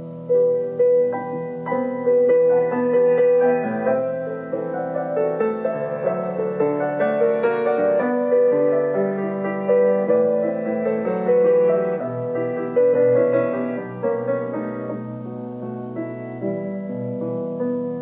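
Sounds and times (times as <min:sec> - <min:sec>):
gentle piano melody: 0:00.0 - 0:18.0.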